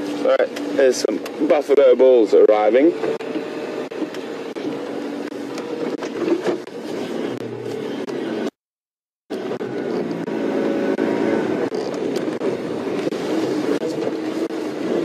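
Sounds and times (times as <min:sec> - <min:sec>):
road and wind rumble: 0:00.0 - 0:08.6, 0:09.3 - 0:15.0
vehicle engine running: 0:09.3 - 0:15.0.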